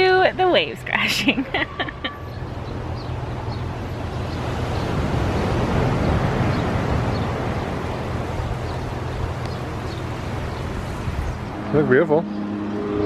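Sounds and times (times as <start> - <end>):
ocean waves crashing: 0.0 - 13.0.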